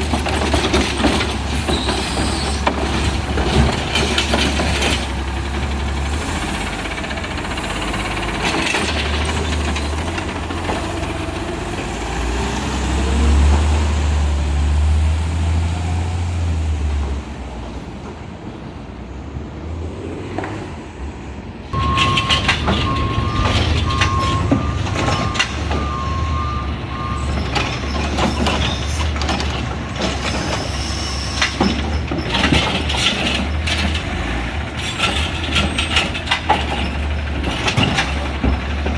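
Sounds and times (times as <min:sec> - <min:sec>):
metal clanks: 0:00.0 - 0:11.6, 0:21.8 - 0:25.9
garbage truck engine rumbling: 0:00.0 - 0:18.5, 0:21.7 - 0:38.9
beeping alarm: 0:21.8 - 0:27.4.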